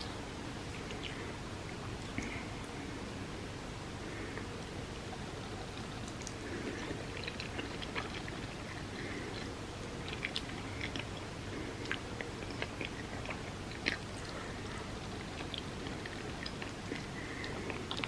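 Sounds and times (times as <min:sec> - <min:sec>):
background hiss: 0:00.0 - 0:18.0
person chewing food: 0:04.2 - 0:18.0.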